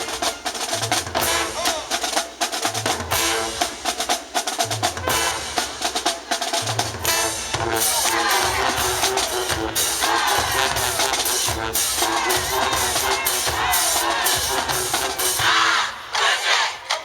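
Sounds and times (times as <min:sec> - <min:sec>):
bass drum beats: 0:06.8 - 0:15.8.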